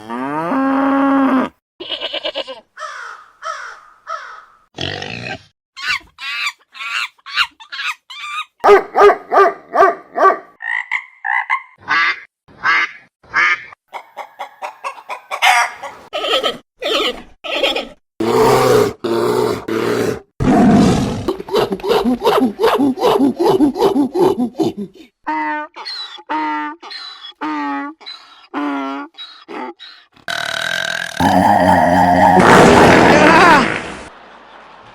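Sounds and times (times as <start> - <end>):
rough animal grunting calls: 30.3 - 33.6.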